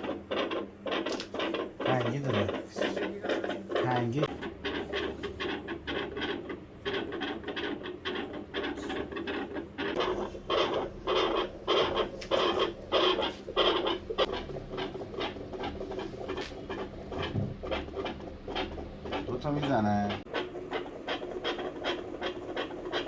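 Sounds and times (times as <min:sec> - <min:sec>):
rasping through a stethoscope: 0:00.0 - 0:23.0.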